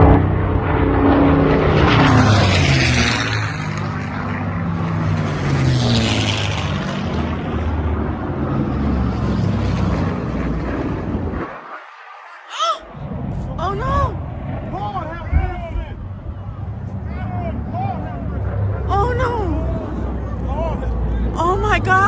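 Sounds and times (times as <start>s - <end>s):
noisy rush: 0.0s - 22.0s
propeller aircraft drone: 0.0s - 22.0s.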